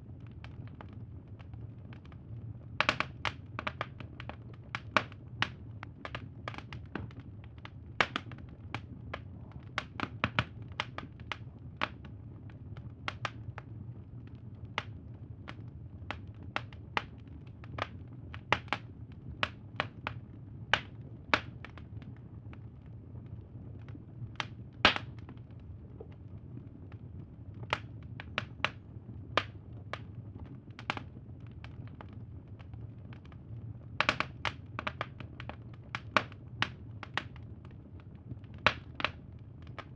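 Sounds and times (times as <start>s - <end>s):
low steady fire rumble: 0.0s - 39.9s
campfire pops and snaps: 2.8s - 12.2s, 13.0s - 13.8s, 15.5s - 22.2s, 24.4s - 25.4s, 27.6s - 28.8s, 29.4s - 30.1s, 30.7s - 33.4s, 34.0s - 37.5s, 38.5s - 39.9s.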